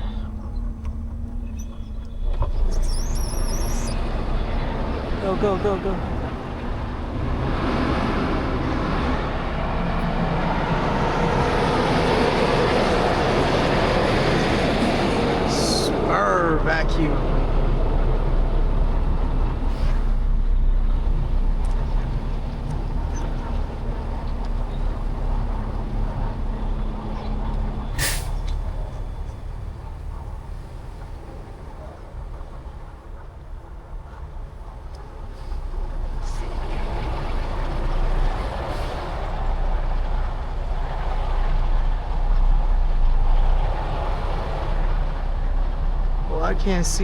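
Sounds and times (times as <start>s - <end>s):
road noise: 0.0s - 47.0s
truck engine rumble: 0.0s - 47.0s
air brakes hissing: 2.6s - 4.0s, 19.6s - 20.2s, 27.9s - 29.5s.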